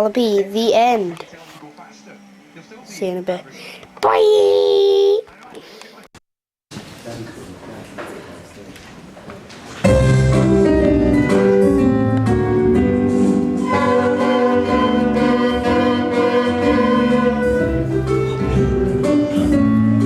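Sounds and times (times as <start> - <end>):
loud music: 9.9 - 20.0.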